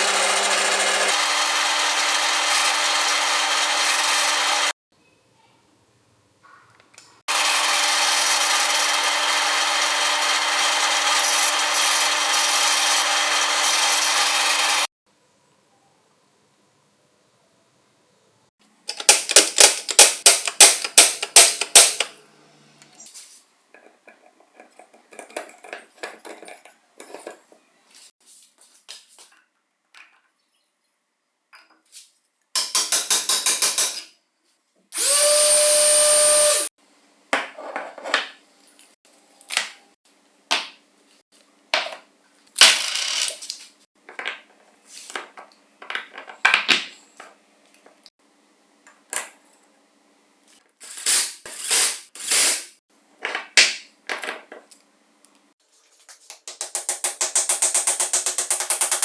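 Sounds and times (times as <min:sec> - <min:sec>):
small electric motor whining: 0:00.0 - 0:04.8, 0:07.3 - 0:14.9, 0:35.0 - 0:36.7
metal parts clicking and knocking: 0:18.9 - 0:22.1, 0:56.4 - 0:59.0
sharp ratcheting taps: 0:56.5 - 0:59.0.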